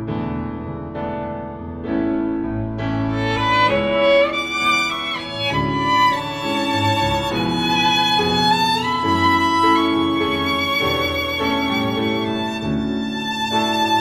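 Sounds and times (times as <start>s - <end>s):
string accompaniment: 2.6s - 14.0s
solo violin melody: 3.1s - 14.0s.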